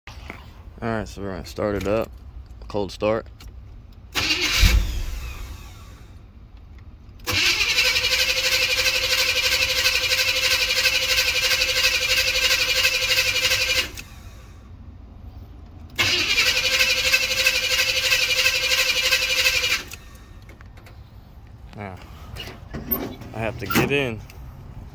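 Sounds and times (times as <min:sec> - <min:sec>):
car engine running with whine: 0:00.2 - 0:24.9
loud thud: 0:04.5 - 0:05.8.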